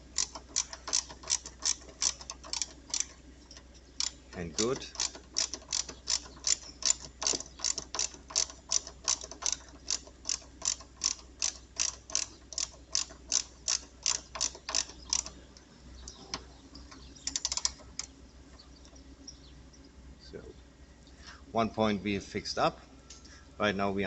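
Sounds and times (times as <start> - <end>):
ratcheting wrench clicking: 0.0 - 15.4, 17.2 - 18.1.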